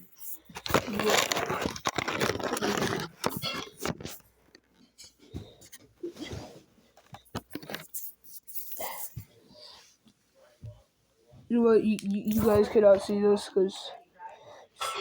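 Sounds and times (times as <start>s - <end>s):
plastic rustle: 0.0s - 4.3s.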